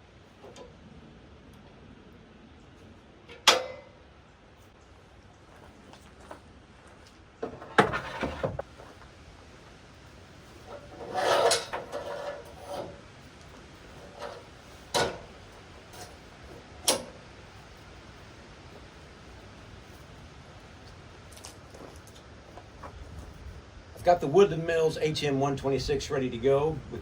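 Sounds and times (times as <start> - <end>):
knocks and clunks: 7.4 - 8.9, 14.0 - 15.4
scraping rub: 10.5 - 15.3.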